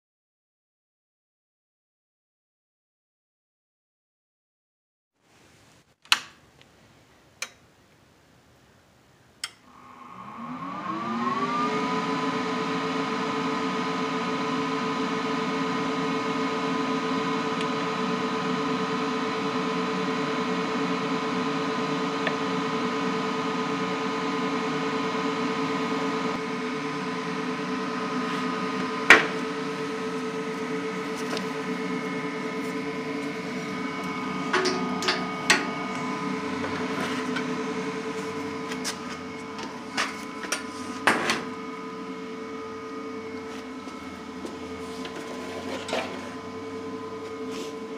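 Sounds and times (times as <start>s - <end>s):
electric motor humming: 9.7s - 47.9s.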